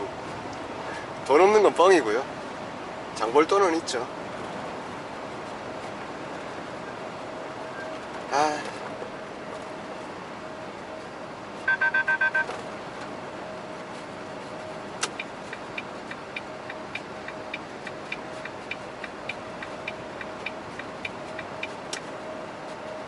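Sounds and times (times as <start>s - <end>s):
truck cab hum: 0.0s - 23.0s
electronic warning beeps: 11.6s - 12.6s, 15.2s - 21.8s
turn signal ticking: 15.0s - 22.1s.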